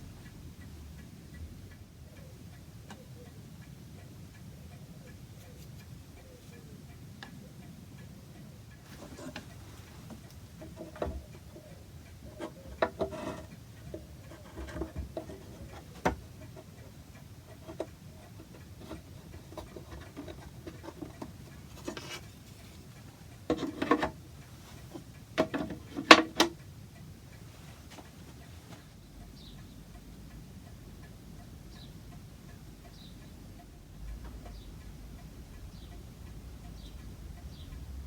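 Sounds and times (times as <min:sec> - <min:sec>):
clock ticking: 0:00.0 - 0:38.0
clicks and knocks: 0:08.9 - 0:11.6, 0:12.2 - 0:16.7, 0:17.5 - 0:22.6, 0:23.5 - 0:24.2, 0:24.8 - 0:26.6.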